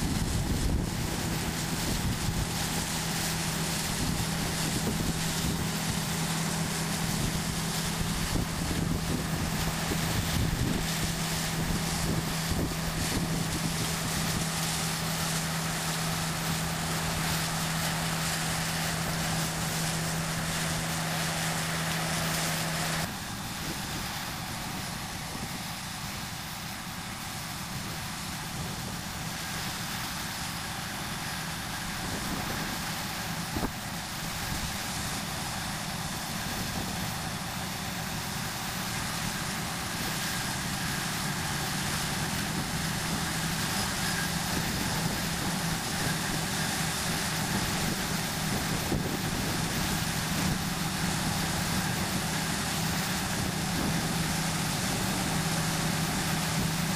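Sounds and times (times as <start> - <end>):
combine harvester running: 0.0 - 56.9
steady hum: 0.0 - 56.9.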